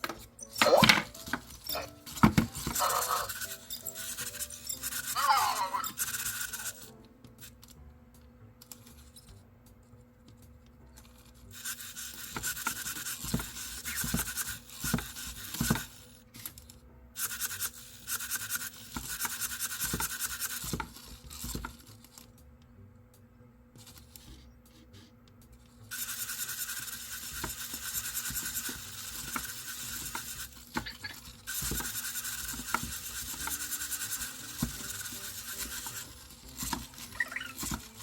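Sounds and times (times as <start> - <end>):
robot motors whirring: 0.0 - 6.9, 11.3 - 22.3, 25.9 - 38.0.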